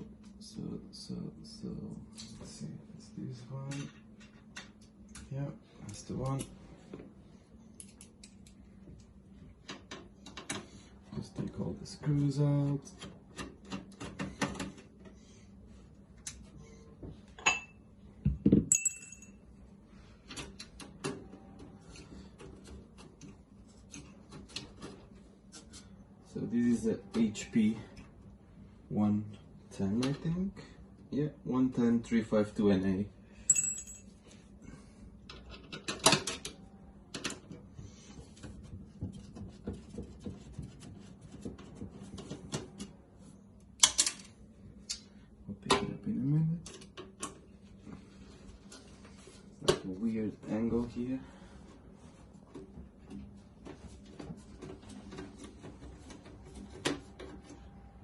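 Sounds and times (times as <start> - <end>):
ringing metallic clinks: 18.7 - 19.4, 33.5 - 34.1.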